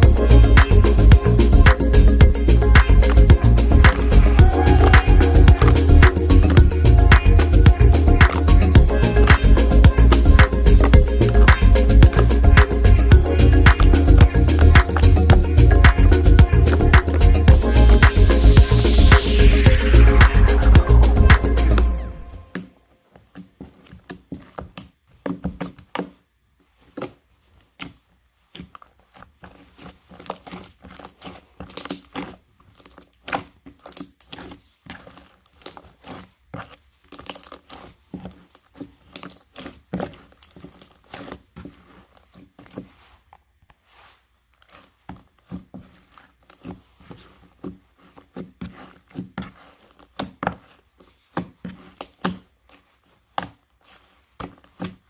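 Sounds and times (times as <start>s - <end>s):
slime squeezed crackling: 26.7s - 55.0s.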